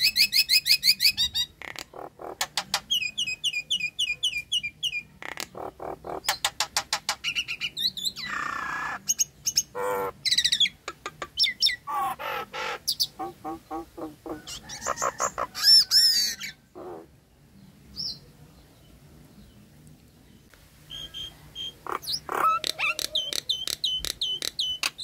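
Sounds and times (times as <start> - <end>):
bird rasping squawk: 9.8 - 10.2, 11.9 - 17.1, 21.8 - 23.7
myna clicks and whistles: 20.9 - 25.0.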